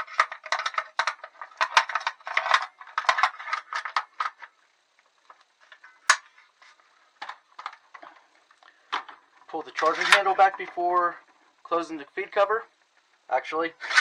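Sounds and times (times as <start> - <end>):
toy gun parts clattering and clicking: 0.0 - 4.5, 5.2 - 6.4, 7.2 - 8.2, 8.9 - 10.8.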